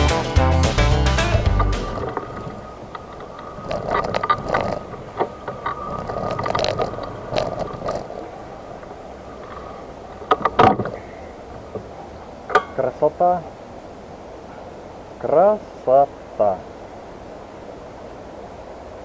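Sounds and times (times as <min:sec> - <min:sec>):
wheels rolling over rough pavement: 0:01.3 - 0:13.1.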